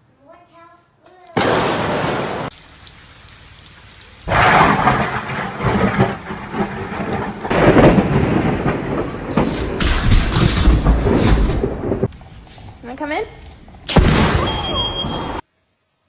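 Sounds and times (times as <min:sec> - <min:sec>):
loud thunder: 0:01.4 - 0:02.5, 0:04.3 - 0:12.1, 0:13.9 - 0:15.4
heavy rain: 0:01.5 - 0:15.4.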